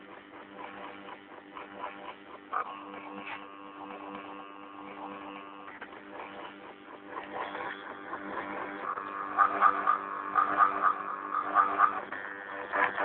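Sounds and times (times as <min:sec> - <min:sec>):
stepper motors humming: 0:00.0 - 0:13.0
mechanism ticking: 0:04.8 - 0:13.0.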